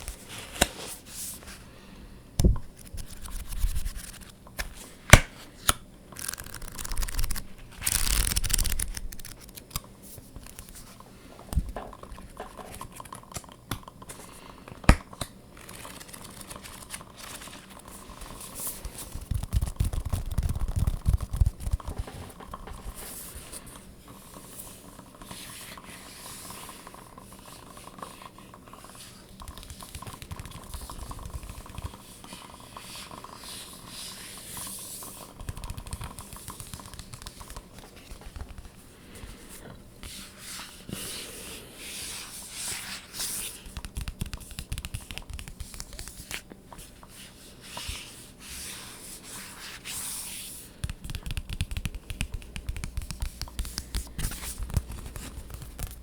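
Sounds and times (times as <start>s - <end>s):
scratching and rustling: 51.0s - 56.0s.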